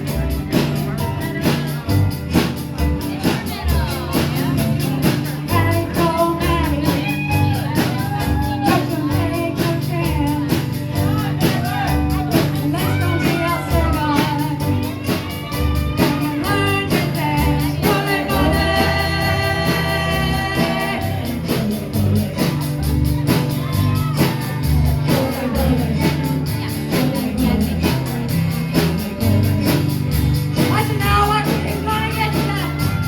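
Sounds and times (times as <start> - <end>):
rock band playing: 0.0 - 33.0
person singing: 3.0 - 33.0.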